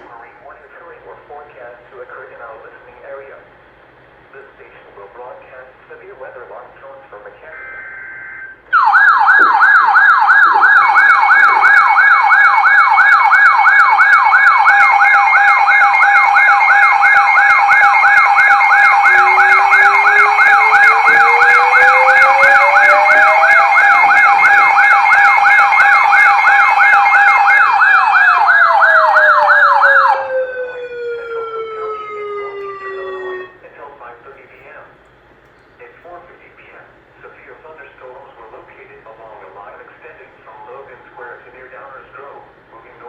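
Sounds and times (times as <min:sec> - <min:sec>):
warbling alarm siren tone: 0:07.5 - 0:33.6
slow rising and falling tone: 0:14.4 - 0:33.5
steady high and low tones: 0:14.6 - 0:29.3.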